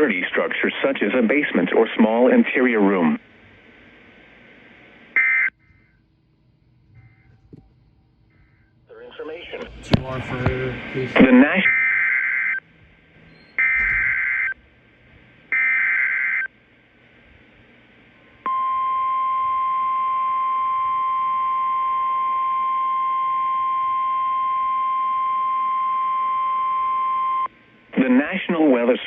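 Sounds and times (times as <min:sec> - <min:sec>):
steady warning alarm tone: 0:05.1 - 0:06.1, 0:11.2 - 0:14.7, 0:15.5 - 0:16.5, 0:18.3 - 0:27.5.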